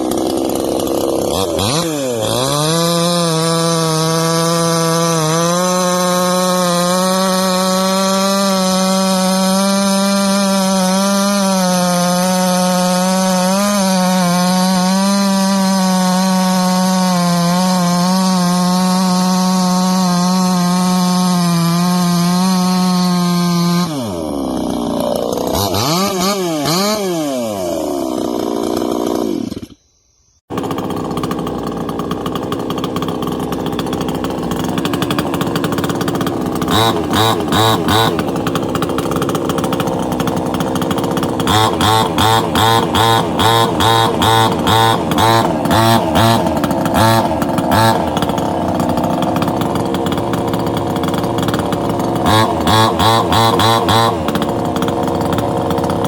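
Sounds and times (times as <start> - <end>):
chainsaw engine revving: 0.0 - 29.9, 30.5 - 56.0.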